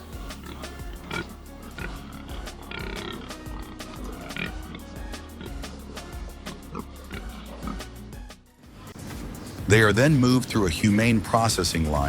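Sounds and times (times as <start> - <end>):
pigs calling: 0.0 - 8.1
music with steady beat: 0.0 - 12.0.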